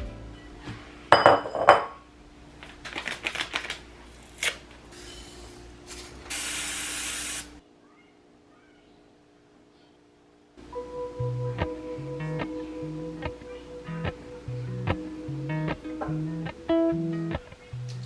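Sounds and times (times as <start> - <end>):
dishes and utensils clattering: 1.1 - 2.0
spraying hiss: 6.3 - 7.6.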